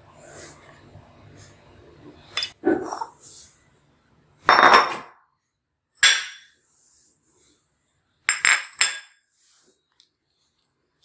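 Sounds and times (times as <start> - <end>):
kitchen utensils clinking: 2.3 - 3.2, 4.5 - 5.1, 6.0 - 6.6, 8.3 - 9.2.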